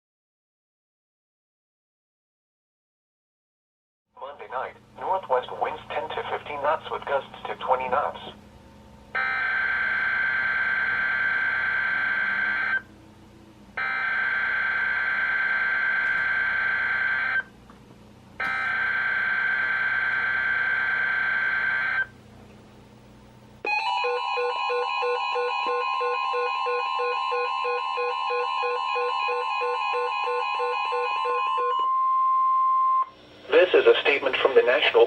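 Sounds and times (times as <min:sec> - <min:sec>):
pulsing alarm beeps: 0:13.8 - 0:17.4, 0:23.7 - 0:33.1.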